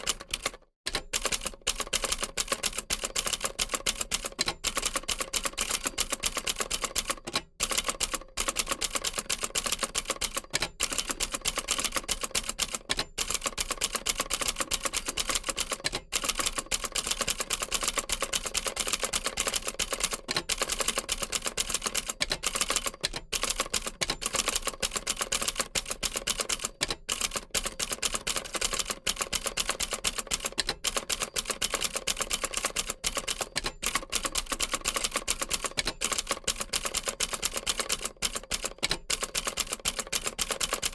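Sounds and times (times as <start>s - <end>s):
manual typewriter typing: 0.0s - 40.9s.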